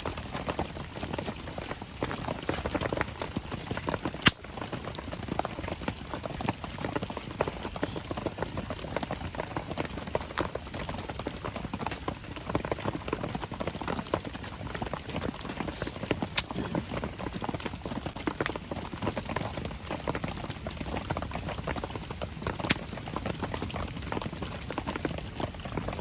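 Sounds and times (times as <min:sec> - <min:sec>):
campfire crackling: 0:00.0 - 0:26.0.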